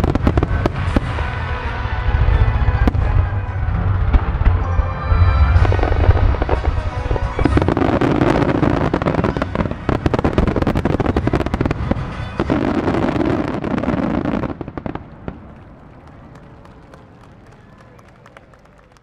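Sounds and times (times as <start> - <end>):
music: 0.0 - 14.9
fireworks bursts and crackling: 0.0 - 19.0.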